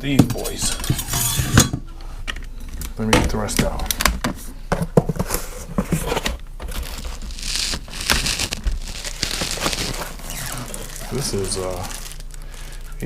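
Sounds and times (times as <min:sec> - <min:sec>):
packaging crinkling and rustling: 0:05.2 - 0:13.0.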